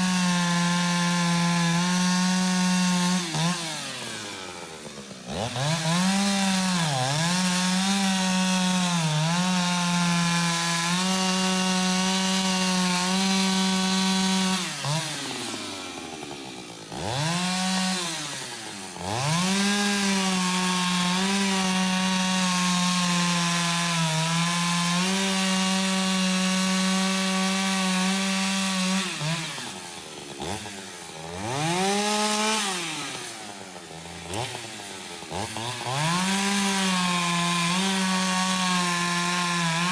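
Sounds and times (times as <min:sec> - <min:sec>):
chainsaw cutting wood: 0:00.0 - 0:39.9.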